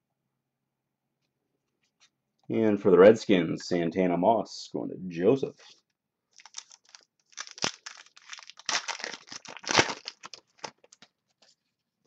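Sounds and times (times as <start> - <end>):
plastic packaging crinkling: 6.3 - 11.5.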